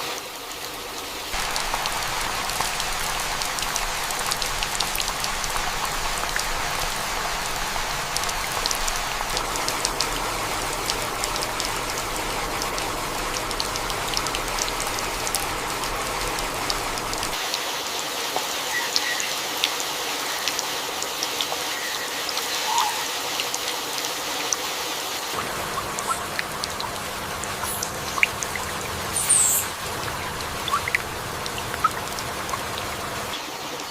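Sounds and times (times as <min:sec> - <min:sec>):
heavy rain with ticking drops: 0:00.0 - 0:33.9.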